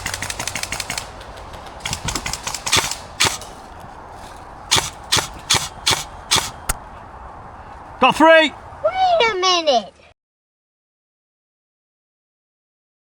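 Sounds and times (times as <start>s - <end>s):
airsoft rifle firing: 0.0s - 6.8s.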